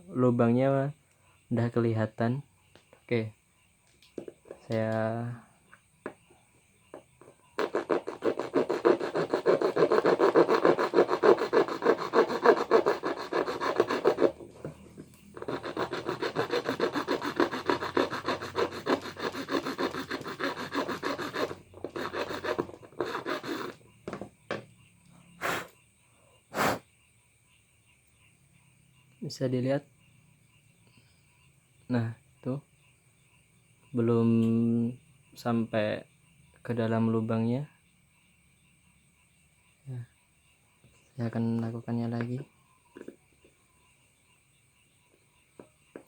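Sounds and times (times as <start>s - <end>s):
hand tool scraping metal: 7.6s - 23.8s.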